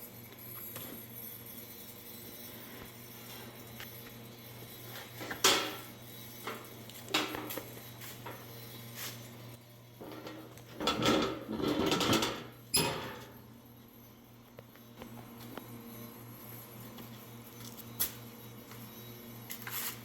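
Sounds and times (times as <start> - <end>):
metal clanks and knocks: 10.0 - 13.3.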